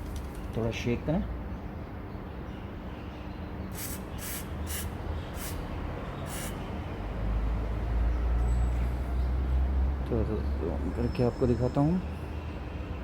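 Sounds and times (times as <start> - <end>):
aerosol can spray bursts: 3.7 - 5.6, 6.3 - 6.6.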